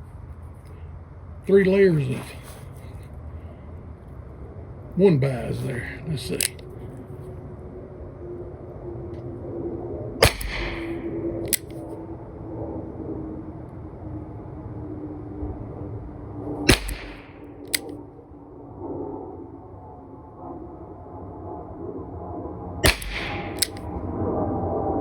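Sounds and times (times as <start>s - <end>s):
revolver gunshot crack: 10.2s - 11.4s, 16.7s - 17.8s, 22.8s - 23.9s
small sharp click: 22.9s - 23.8s.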